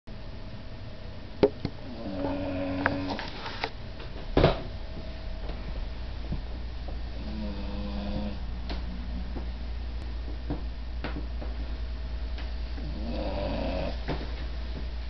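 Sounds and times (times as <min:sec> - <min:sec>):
dog snoring: 0:01.8 - 0:03.3, 0:07.1 - 0:08.4, 0:12.7 - 0:14.2.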